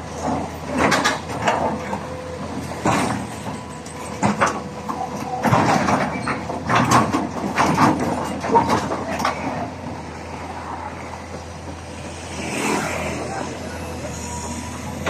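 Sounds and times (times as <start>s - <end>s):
heavy truck running: 0.0s - 15.0s
metallic clanks and rattles: 2.8s - 9.6s.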